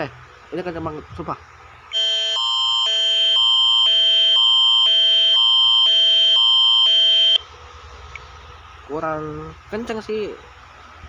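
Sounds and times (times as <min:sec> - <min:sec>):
two-tone warbling alarm tone: 0:01.9 - 0:07.4.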